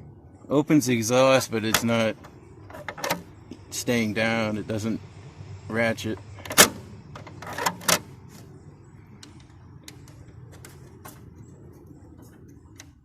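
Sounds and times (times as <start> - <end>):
low steady rumble: 0.0 - 13.0
plastic knobs clicking: 1.6 - 3.6.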